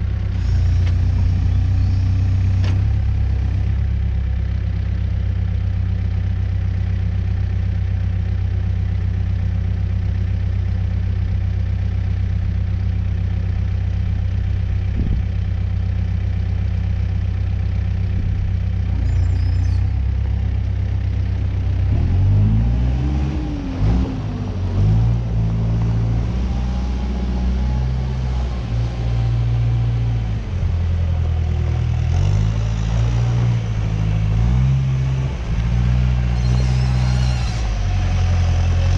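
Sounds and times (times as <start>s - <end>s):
diesel engine idling and revving: 0.0s - 38.9s.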